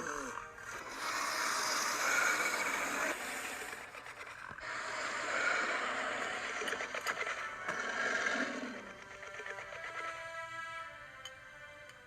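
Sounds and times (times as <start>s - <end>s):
breathy rasping growl: 0.0s - 10.0s.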